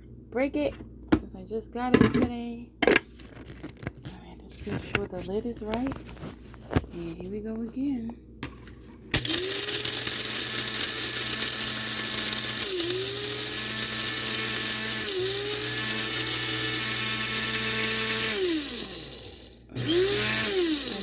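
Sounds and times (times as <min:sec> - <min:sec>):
coffee grinder motor: 0:09.2 - 0:21.0.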